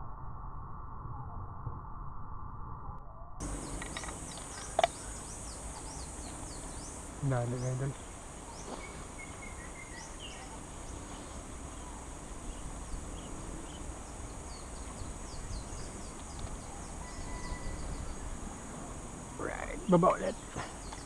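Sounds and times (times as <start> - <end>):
high-pitched insect buzz: 3.4 - 21.0
low steady rumble: 3.4 - 21.0.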